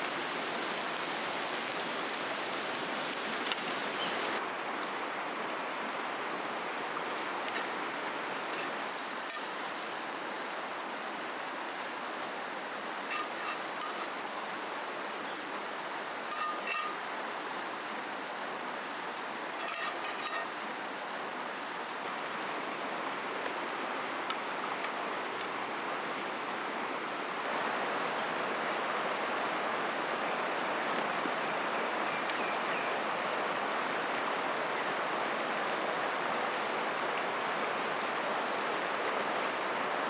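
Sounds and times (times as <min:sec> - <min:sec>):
bright hissy water: 0:00.0 - 0:23.0, 0:27.5 - 0:40.0
river rushing: 0:00.0 - 0:23.4, 0:27.5 - 0:32.0.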